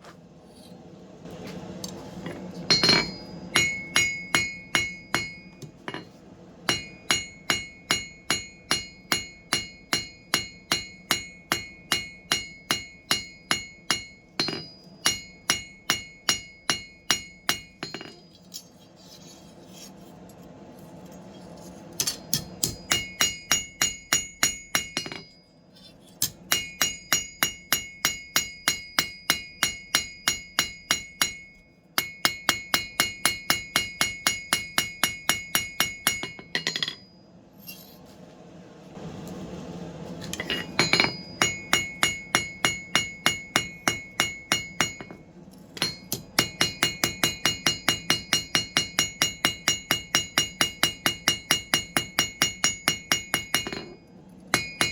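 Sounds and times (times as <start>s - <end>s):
hammer ringing on anvil: 2.7s - 6.1s, 6.7s - 18.3s, 22.0s - 25.5s, 26.2s - 37.3s, 40.4s - 45.2s, 45.8s - 54.9s.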